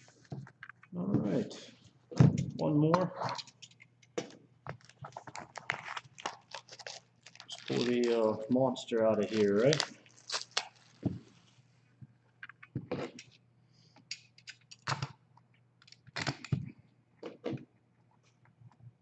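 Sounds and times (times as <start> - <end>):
wrapper rustling: 4.8 - 11.6.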